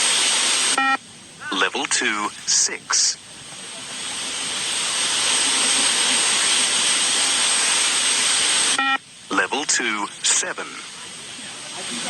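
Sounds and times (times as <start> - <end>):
steady rushing noise: 0.0 - 12.0
electronic test beep: 8.8 - 9.0.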